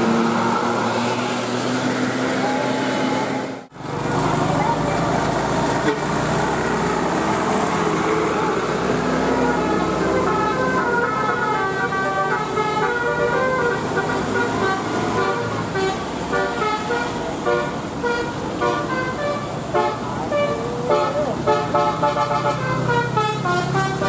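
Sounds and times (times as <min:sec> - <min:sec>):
road rumble: 0:00.0 - 0:24.0
multi-tone bus horn tune: 0:05.7 - 0:24.0.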